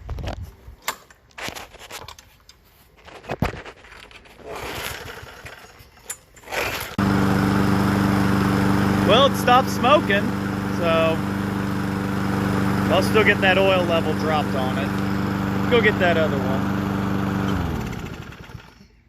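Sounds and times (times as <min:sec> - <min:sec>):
lawn mower engine running: 0:06.5 - 0:18.8.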